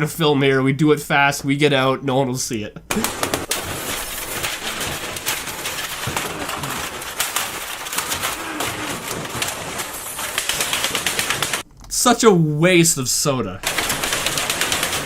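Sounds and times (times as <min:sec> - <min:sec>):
small crackles and knocks: 0:03.1 - 0:11.8.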